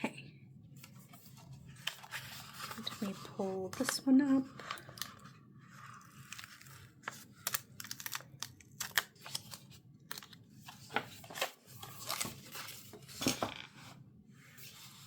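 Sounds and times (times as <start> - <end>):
paper clicks and crackles: 1.8 - 13.5.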